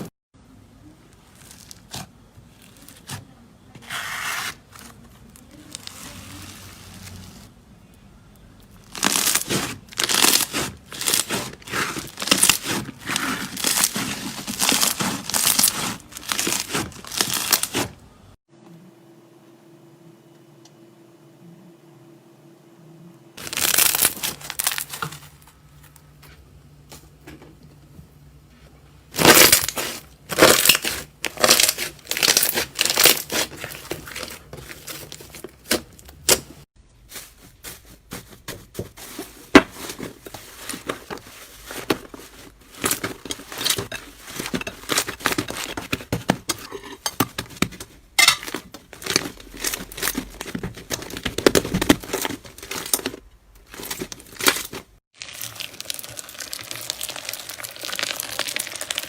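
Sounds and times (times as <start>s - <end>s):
slime squeezed crackling and popping: 8.9s - 11.4s, 55.2s - 59.0s.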